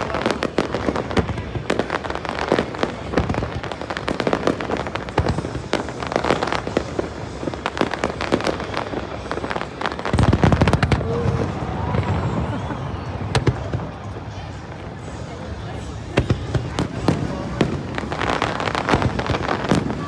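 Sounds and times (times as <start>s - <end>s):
fireworks bangs and crackles: 0.0s - 20.0s
heavy booming firework burst: 16.2s - 20.0s.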